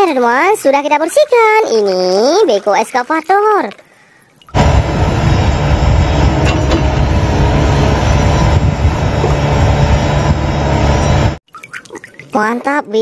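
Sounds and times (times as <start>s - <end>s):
deep engine-like roar: 4.6s - 11.4s.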